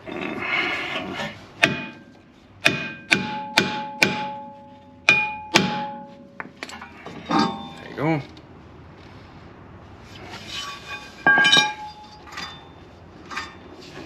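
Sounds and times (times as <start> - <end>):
hammer striking metal: 1.6 - 7.8
metal ringing: 1.6 - 8.0, 10.7 - 13.7.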